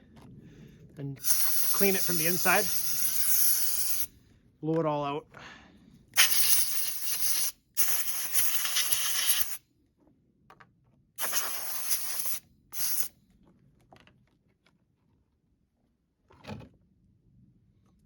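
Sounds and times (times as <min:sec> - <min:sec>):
compressed air blow gun hissing: 0:01.2 - 0:04.1, 0:06.2 - 0:09.6, 0:11.2 - 0:13.1.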